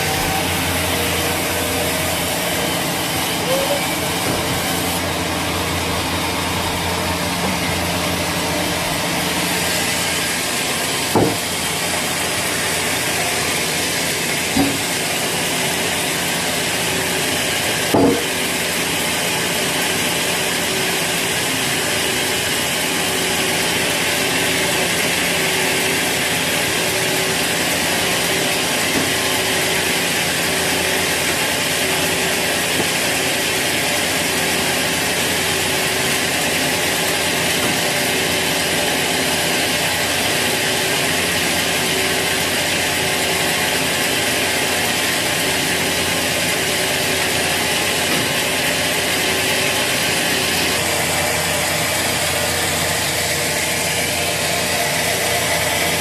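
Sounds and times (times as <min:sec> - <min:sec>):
sawmill saw cutting log: 0:00.0 - 0:56.0
sharp knocks: 0:11.1 - 0:11.4, 0:14.5 - 0:14.9, 0:17.9 - 0:18.3.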